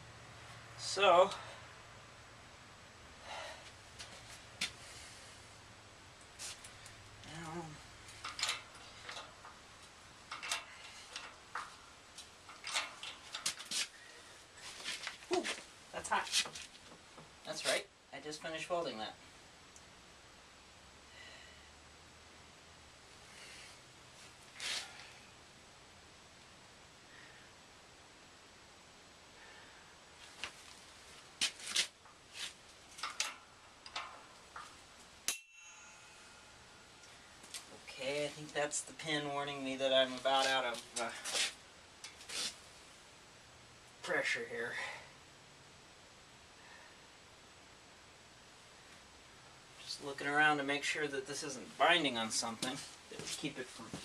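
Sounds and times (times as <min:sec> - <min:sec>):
metal tools clicking and scraping: 0:08.1 - 0:09.6, 0:10.2 - 0:11.8, 0:12.4 - 0:13.8, 0:33.0 - 0:36.2.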